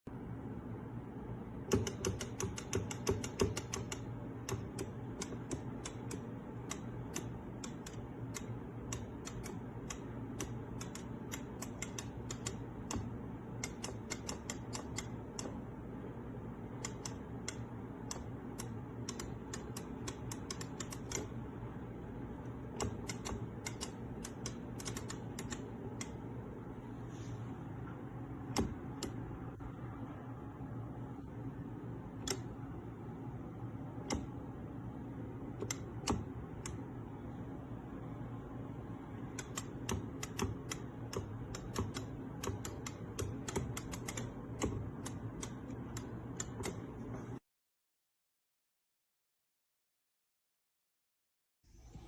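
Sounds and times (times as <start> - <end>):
steady low hum: 0.1 - 47.4
arcade stick buttons clicking: 1.6 - 15.6, 16.7 - 21.5, 22.4 - 26.3, 28.5 - 29.2, 32.2 - 32.6, 34.0 - 34.4, 35.5 - 36.8, 39.2 - 47.0.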